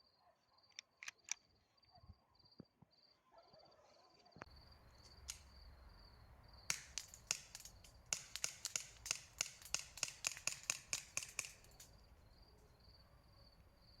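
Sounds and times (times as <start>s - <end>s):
crickets chirping: 0.0s - 14.0s
airsoft gun firing rapid shots: 6.7s - 12.0s.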